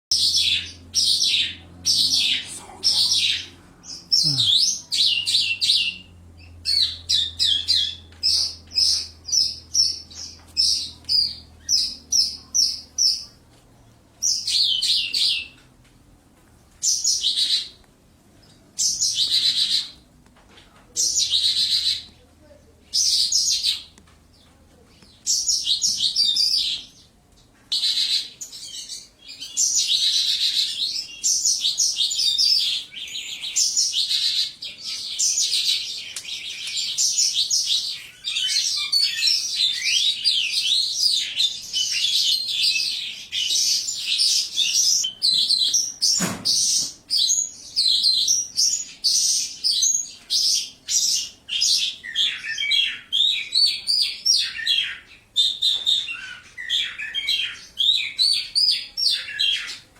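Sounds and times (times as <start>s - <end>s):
lark singing: 0.2s - 8.0s.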